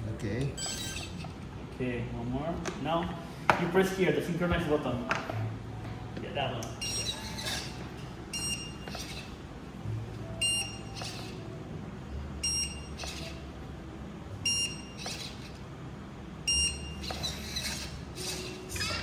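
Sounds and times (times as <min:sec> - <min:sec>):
short high-pitched electronic beeps: 0:00.6 - 0:01.2, 0:06.8 - 0:07.6, 0:08.3 - 0:08.8, 0:10.4 - 0:11.3, 0:12.4 - 0:13.2, 0:14.4 - 0:15.2, 0:16.5 - 0:17.0.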